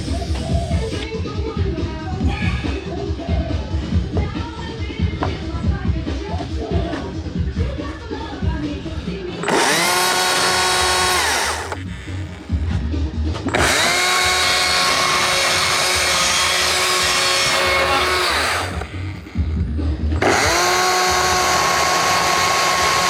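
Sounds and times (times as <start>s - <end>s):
music: 0.0s - 23.0s
power tool motor whining: 9.4s - 23.0s.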